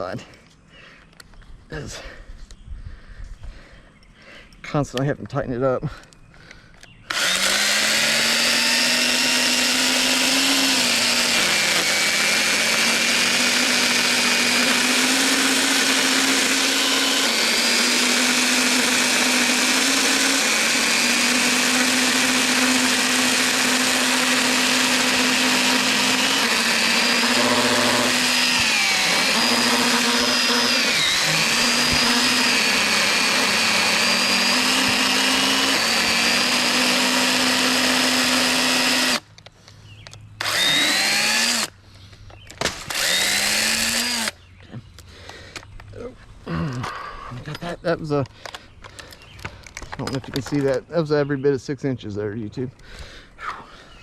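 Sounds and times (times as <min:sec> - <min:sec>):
electric saw cutting wood: 0:07.1 - 0:39.3, 0:40.4 - 0:41.8, 0:42.6 - 0:44.4.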